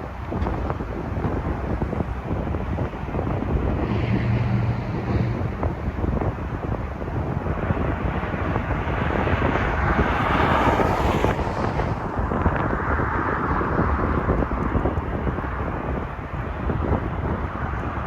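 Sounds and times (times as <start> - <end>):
wind buffeting microphone: 0.0 - 18.0
jet engines passing: 1.8 - 14.2.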